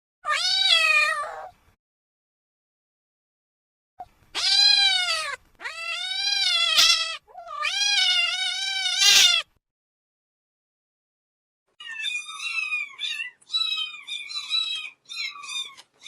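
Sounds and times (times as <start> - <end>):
cat meowing: 0.2 - 1.5, 4.4 - 9.6, 11.8 - 16.0.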